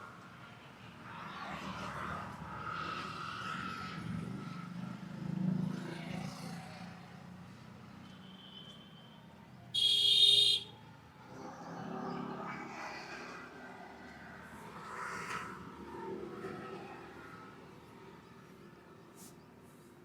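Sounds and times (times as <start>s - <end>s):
traffic: 0.0s - 20.0s
loud high-pitched tone: 9.8s - 10.7s.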